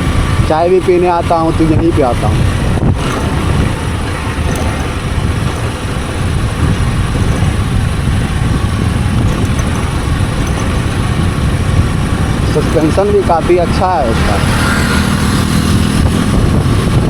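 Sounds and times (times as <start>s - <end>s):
motorcycle engine rumble: 0.0s - 17.0s
road and wind noise: 0.0s - 17.0s.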